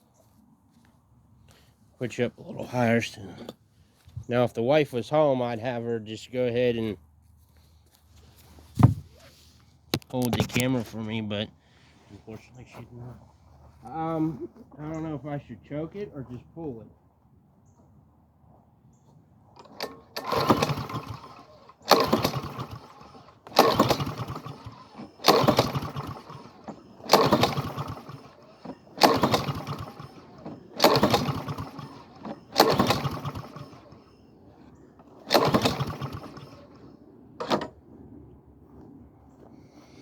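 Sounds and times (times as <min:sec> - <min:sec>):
lawn mower recoil starter pulls: 0:19.5 - 0:37.8
engine spinning over: 0:19.6 - 0:37.8.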